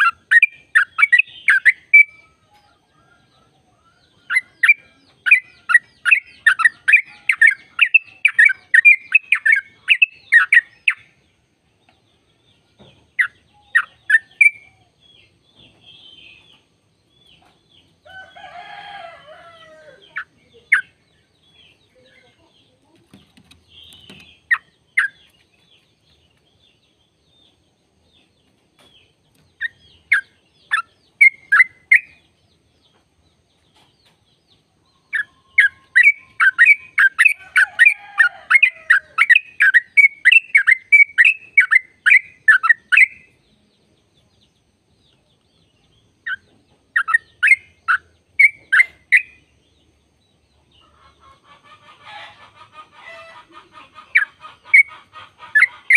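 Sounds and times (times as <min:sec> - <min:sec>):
bulbul chirping: 0:46.2 - 0:49.5.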